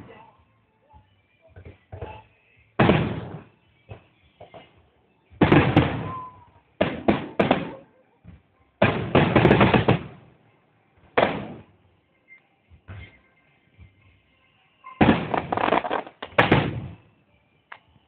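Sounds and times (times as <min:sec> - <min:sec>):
fireworks bangs: 0:02.8 - 0:03.5, 0:05.3 - 0:07.8, 0:08.8 - 0:10.3, 0:11.2 - 0:11.7, 0:15.0 - 0:17.1.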